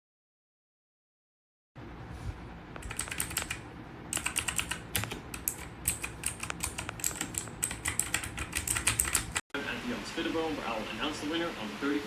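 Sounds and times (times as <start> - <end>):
mechanical keyboard typing: 2.8 - 9.4.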